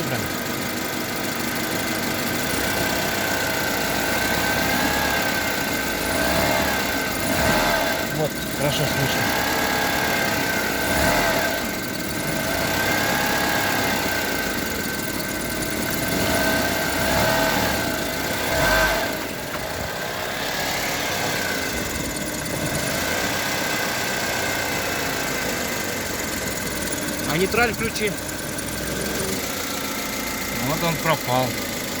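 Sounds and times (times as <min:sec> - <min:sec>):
car engine running: 0:00.0 - 0:32.0.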